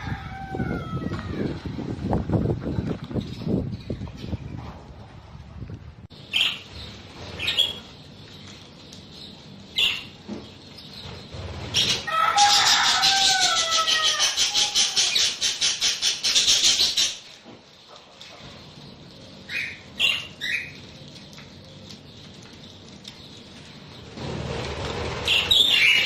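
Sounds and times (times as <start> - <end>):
budgerigars chirping: 6.2 - 7.9, 9.7 - 12.1, 13.6 - 17.2, 19.4 - 20.8
fast fluttering pulsing: 24.0 - 26.0.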